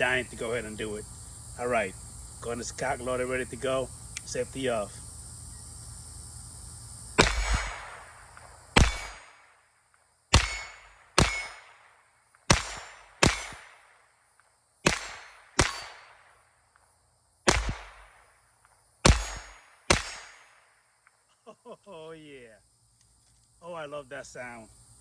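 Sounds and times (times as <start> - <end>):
pistol shots echoing: 7.2 - 9.5, 10.3 - 14.0, 14.8 - 16.4, 17.5 - 18.3, 19.0 - 20.7.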